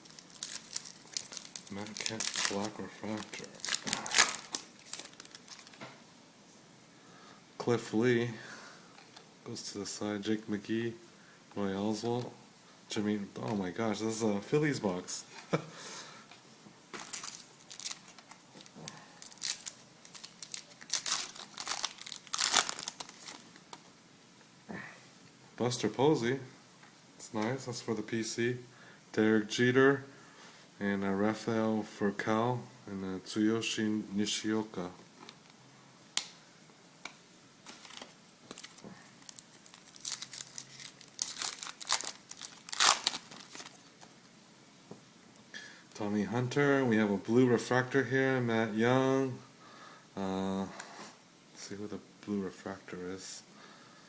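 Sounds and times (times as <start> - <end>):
foil wrapper tearing and crackling: 0.0 - 5.8, 17.0 - 23.4, 37.7 - 44.0.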